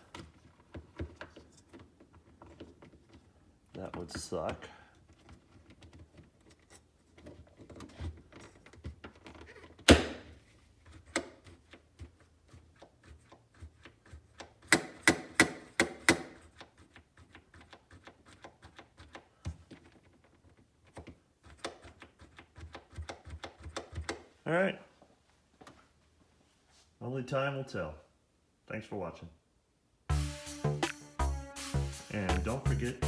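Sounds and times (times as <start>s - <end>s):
loud thunk: 9.9s - 10.3s.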